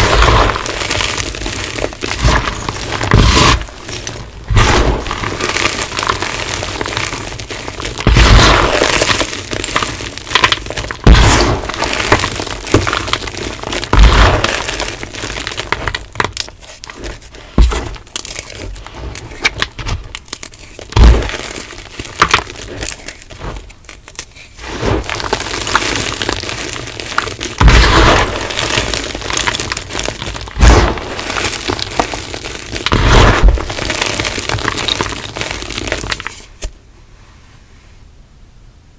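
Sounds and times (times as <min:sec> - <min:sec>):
chalk cracking: 0:00.0 - 0:36.7
gritty chalk crumbling: 0:00.0 - 0:36.7.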